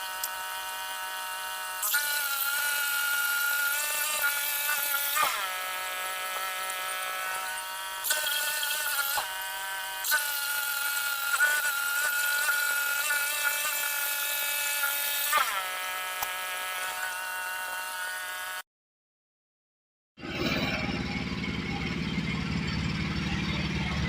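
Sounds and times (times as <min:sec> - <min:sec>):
saw blade cutting log: 0:00.0 - 0:18.6
small gas engine running: 0:00.0 - 0:18.6, 0:20.2 - 0:24.0.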